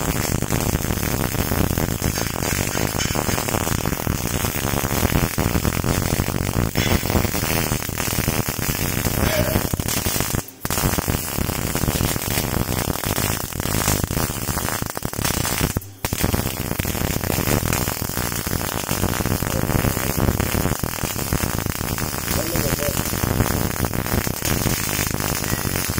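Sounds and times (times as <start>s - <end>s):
welding arc crackling: 0.0s - 25.9s.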